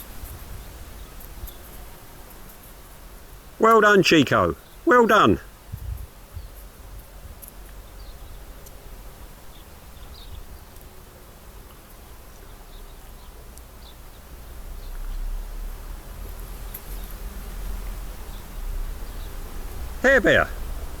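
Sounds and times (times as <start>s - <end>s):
wind rumble on microphone: 0.0s - 1.6s, 5.6s - 7.4s.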